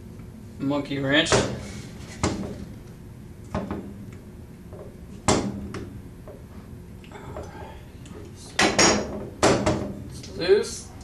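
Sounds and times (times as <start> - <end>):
loud metal knock: 8.6 - 10.0.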